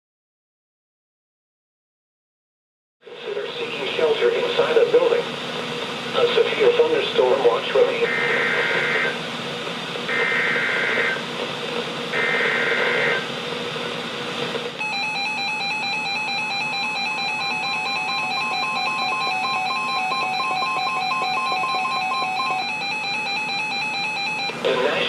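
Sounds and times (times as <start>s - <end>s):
long steady alert tone: 8.0s - 9.2s, 14.8s - 25.0s
warbling digital data tones: 14.8s - 25.0s.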